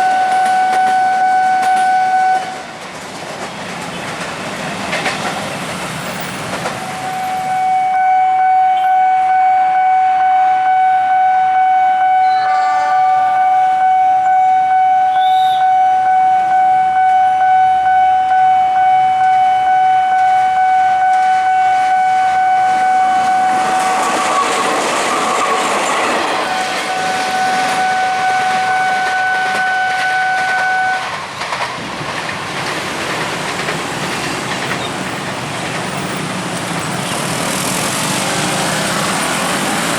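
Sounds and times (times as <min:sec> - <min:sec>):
train horn blast: 0:00.0 - 0:02.6, 0:07.2 - 0:31.2
train wheels clattering: 0:00.3 - 0:07.5, 0:22.7 - 0:39.9.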